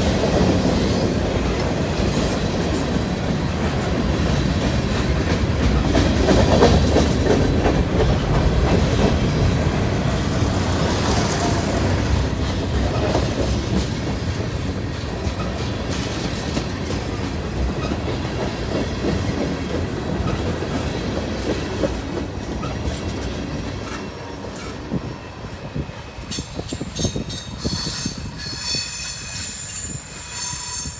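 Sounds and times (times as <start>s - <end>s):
train wheels rumbling and clacking: 0.0s - 30.9s
high wheel squeal: 26.3s - 30.9s.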